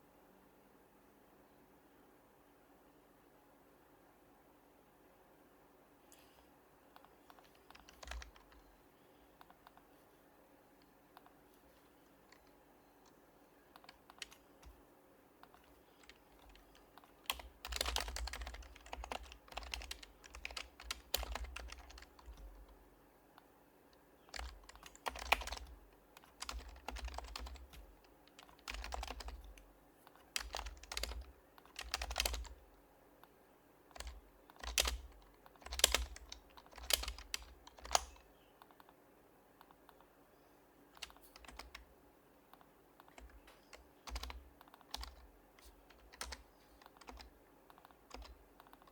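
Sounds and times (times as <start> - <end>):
keyboard typing: 6.9 - 8.8, 10.8 - 14.8, 15.4 - 22.8, 24.2 - 32.6, 33.2 - 39.0, 39.6 - 40.2, 40.9 - 41.9, 42.5 - 48.9.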